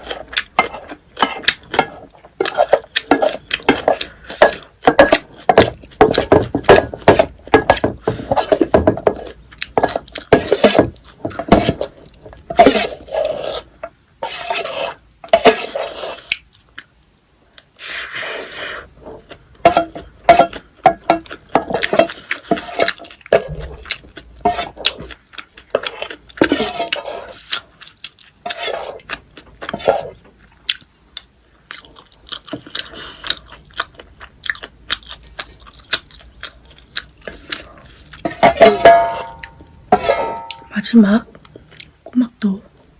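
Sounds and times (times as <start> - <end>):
metal spoon scraping a bowl: 0.0 - 16.3, 21.6 - 23.8, 24.4 - 25.0, 25.7 - 27.6, 28.5 - 29.1, 29.7 - 30.2, 38.2 - 40.8.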